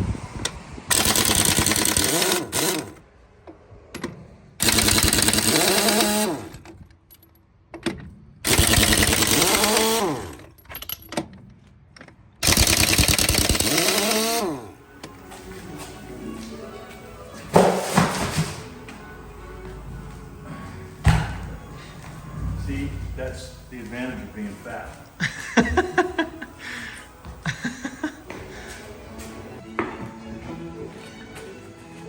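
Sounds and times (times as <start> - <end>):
pneumatic impact wrench hammering: 0.9 - 3.0, 4.6 - 6.8, 7.8 - 11.2, 12.4 - 14.8.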